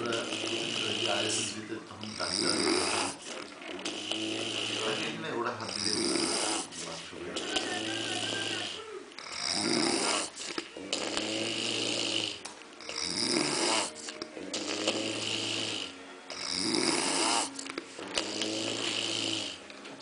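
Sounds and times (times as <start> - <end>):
person snoring: 0.0 - 19.6
hissing breath out: 8.1 - 19.6.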